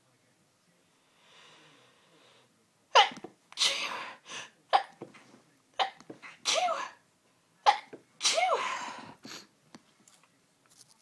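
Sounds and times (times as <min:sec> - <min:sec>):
noisy breaths: 0:00.8 - 0:02.6, 0:03.7 - 0:06.5, 0:08.5 - 0:09.6
woman sneezing: 0:03.0 - 0:04.2, 0:05.8 - 0:07.0, 0:07.7 - 0:09.4.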